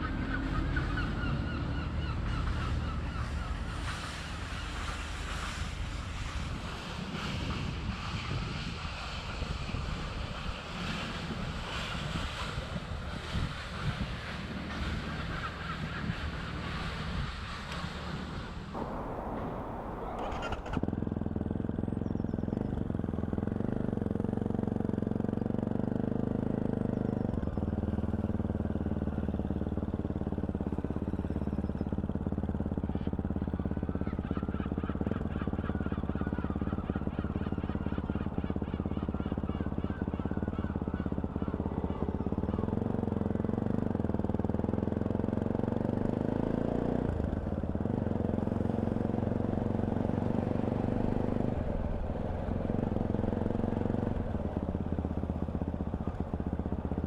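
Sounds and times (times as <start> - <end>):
motorcycle engine running: 18.8 - 57.0.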